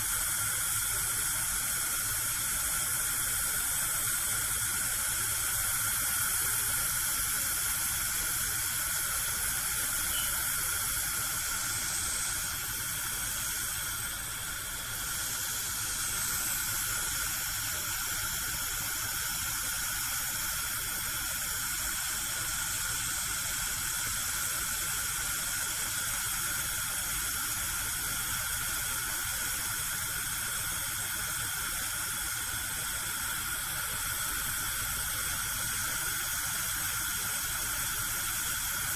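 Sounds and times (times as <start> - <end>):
gas burner flame hissing: 0.0 - 38.9.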